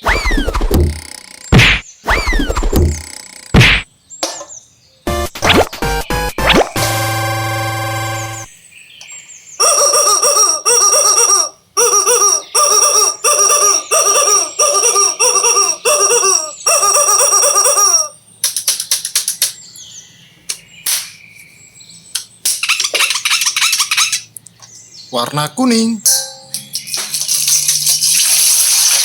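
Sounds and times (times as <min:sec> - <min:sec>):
looping electronic jingle: 0:00.3 - 0:03.7, 0:05.1 - 0:08.6, 0:09.6 - 0:18.2
sharp clicks: 0:18.4 - 0:19.6, 0:22.2 - 0:24.6.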